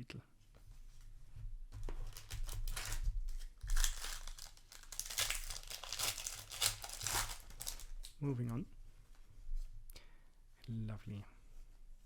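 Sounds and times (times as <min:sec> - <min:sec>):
foil wrapper crinkling and tearing: 0:02.0 - 0:08.2.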